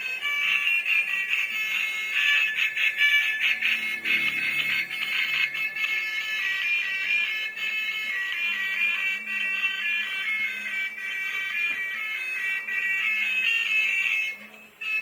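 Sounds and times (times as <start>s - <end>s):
electronic beeping melody: 1.7s - 6.3s.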